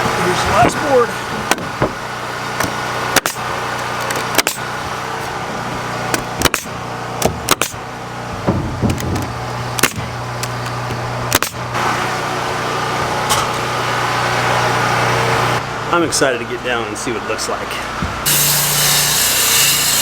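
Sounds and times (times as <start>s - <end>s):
engine humming: 0.0s - 18.8s
hammer nailing board: 4.3s - 4.6s, 6.4s - 7.8s, 8.5s - 10.0s.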